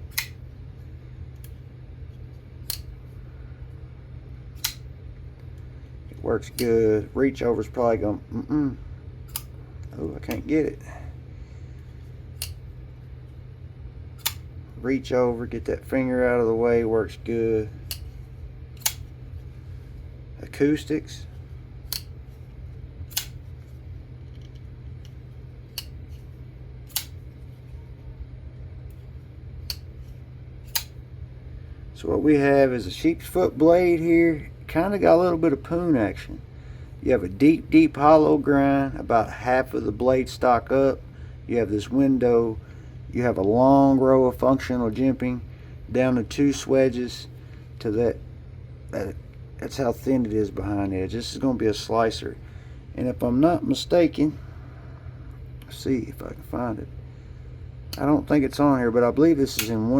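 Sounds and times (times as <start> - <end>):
low steady hum: 0.0 - 59.9
folding knife blade clicks: 0.1 - 0.4, 2.7 - 2.9, 4.6 - 4.9, 9.3 - 9.5, 12.4 - 12.6, 14.2 - 14.4, 18.8 - 19.0, 21.9 - 22.1, 23.1 - 23.4, 26.9 - 27.2, 30.7 - 31.0.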